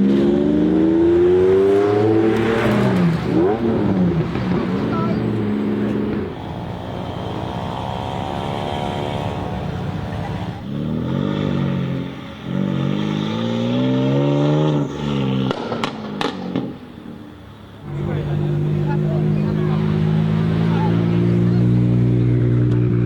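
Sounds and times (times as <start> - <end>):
car engine accelerating hard: 0.0 - 23.0
sharp exhaust cracks: 2.0 - 23.0.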